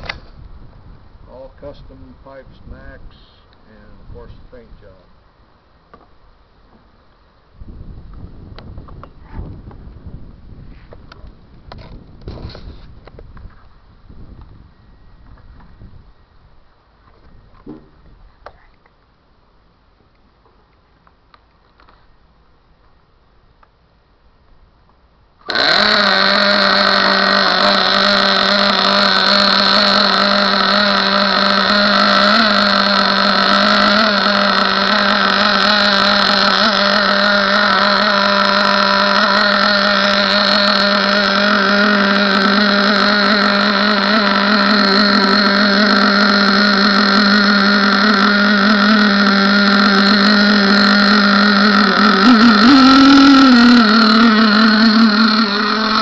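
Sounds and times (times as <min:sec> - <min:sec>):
model boat engine running: 0:25.4 - 0:56.0.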